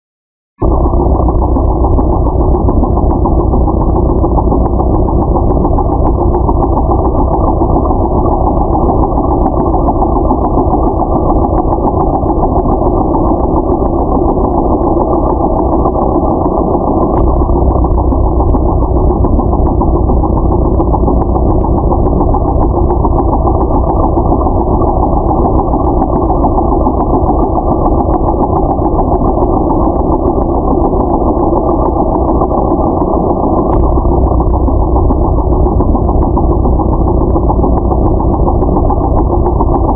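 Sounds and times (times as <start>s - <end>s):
ship engine running: 0.6s - 39.9s.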